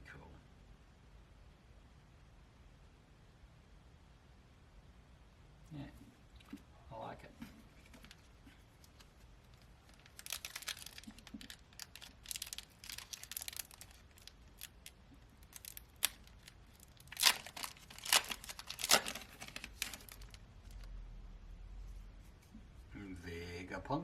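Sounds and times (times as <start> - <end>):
foil wrapper tearing and crinkling: 8.8 - 20.9.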